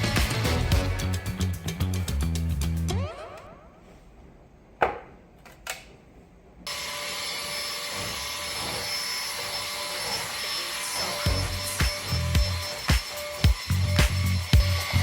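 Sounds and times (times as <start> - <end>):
vacuum cleaner whining: 6.7 - 15.0.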